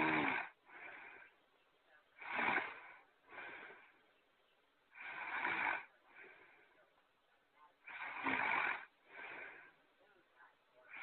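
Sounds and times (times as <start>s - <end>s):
person snoring: 0.0s - 1.2s, 2.2s - 3.8s, 4.9s - 6.4s, 7.8s - 9.7s.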